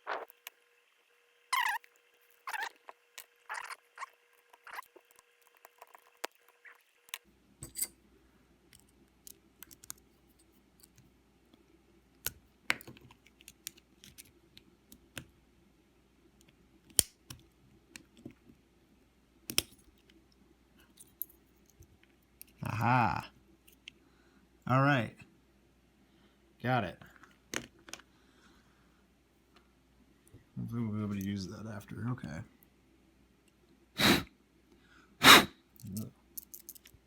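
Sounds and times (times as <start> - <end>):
faint low hum: 0.0 - 37.0
small parts and tools clicking: 1.6 - 8.0, 8.7 - 11.1, 12.2 - 15.2, 19.5 - 20.2, 35.8 - 37.0.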